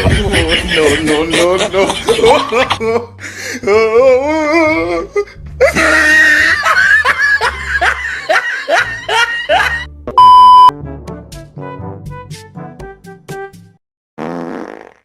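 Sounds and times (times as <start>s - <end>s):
laughter: 0.0s - 3.1s, 5.6s - 9.9s
background music: 0.0s - 13.8s
electronic beep: 10.2s - 10.7s.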